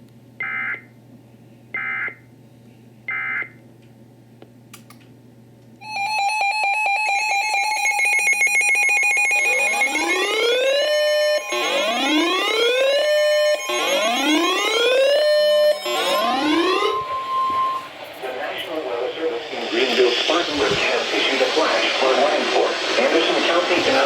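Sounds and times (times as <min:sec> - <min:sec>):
pulsing electronic alarm tone: 0:05.8 - 0:18.2
digital data squawks: 0:07.1 - 0:18.0
rising electronic sweeps: 0:09.0 - 0:24.0.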